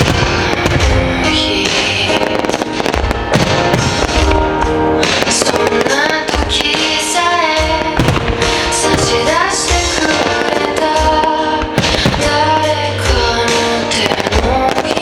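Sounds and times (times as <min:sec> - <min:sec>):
fireworks booming and crackling: 0:00.0 - 0:15.0
music over speakers: 0:00.0 - 0:15.0
woman singing: 0:00.2 - 0:02.5, 0:05.4 - 0:15.0.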